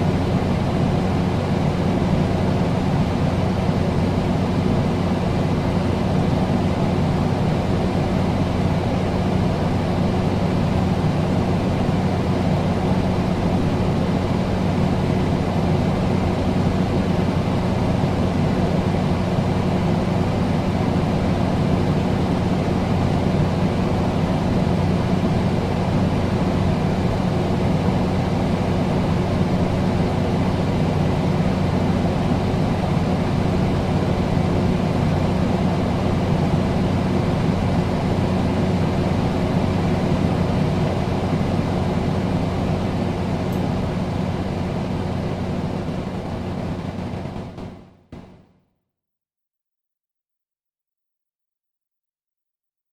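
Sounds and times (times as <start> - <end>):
low electrical hum: 0.0 - 47.8
air conditioner fan rushing: 0.0 - 48.4.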